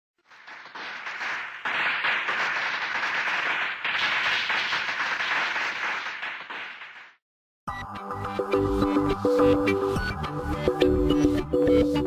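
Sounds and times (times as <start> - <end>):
fireworks crackling: 0.2 - 7.2.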